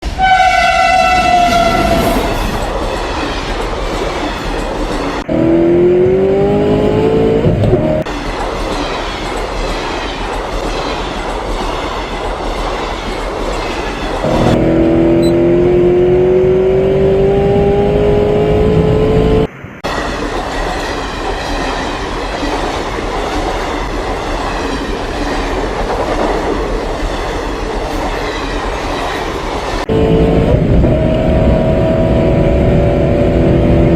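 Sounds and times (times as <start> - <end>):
train horn blast: 0.0 - 2.6, 14.2 - 15.3
train running rumble: 0.0 - 5.3, 7.2 - 14.6, 18.8 - 33.9
slow rising whines: 5.3 - 8.1, 14.2 - 19.5, 29.9 - 33.9.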